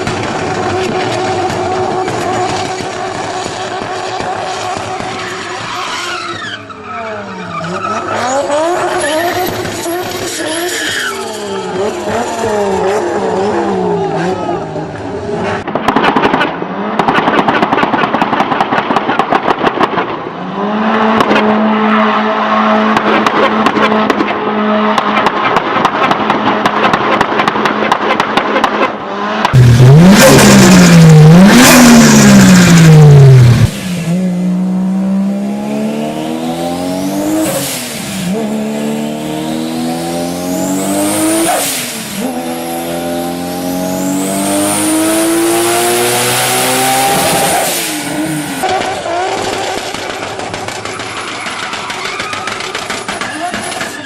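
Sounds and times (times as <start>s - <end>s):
car accelerating through gears: 29.1s - 49.4s
engine revving hard: 29.1s - 49.6s
fast fluttering engine rattle: 48.6s - 54.0s.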